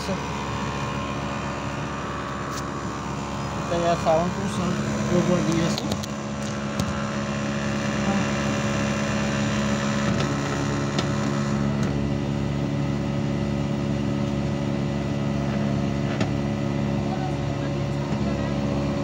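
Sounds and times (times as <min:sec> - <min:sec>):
air conditioner humming: 0:00.0 - 0:12.6.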